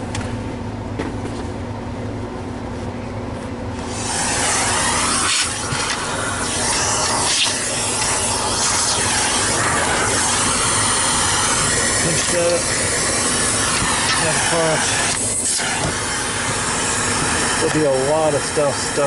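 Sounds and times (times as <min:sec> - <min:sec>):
loud rush of air: 0:03.8 - 0:17.7.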